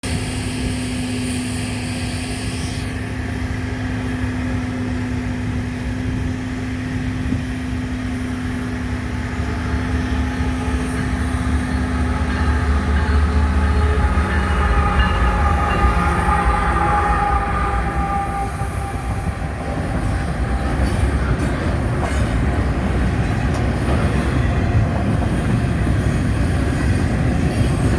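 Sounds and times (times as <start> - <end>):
freight train diesel rumble: 0.0 - 27.9
high ringing tones: 9.3 - 23.4.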